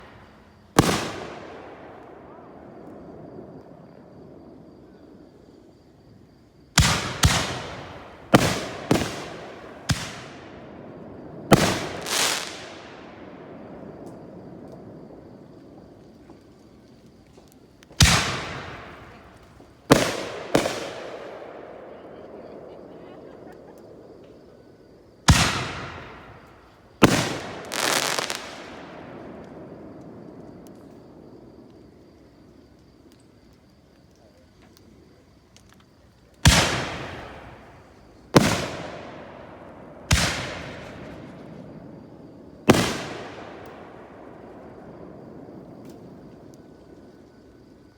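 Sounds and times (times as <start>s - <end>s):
firework mortar bangs: 0.0s - 2.0s, 6.8s - 13.5s, 18.0s - 21.6s, 25.3s - 30.8s, 36.4s - 46.5s
firework crackling: 6.8s - 21.4s, 25.3s - 31.3s.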